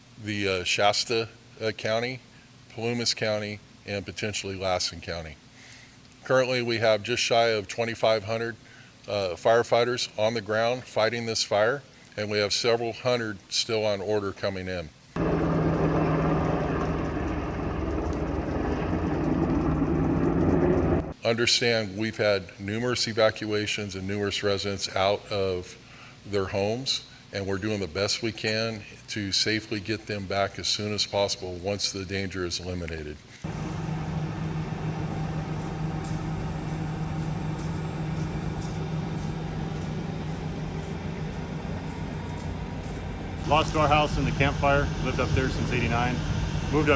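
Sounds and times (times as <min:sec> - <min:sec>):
engine running steadily: 0:15.2 - 0:21.2, 0:33.5 - 0:46.9.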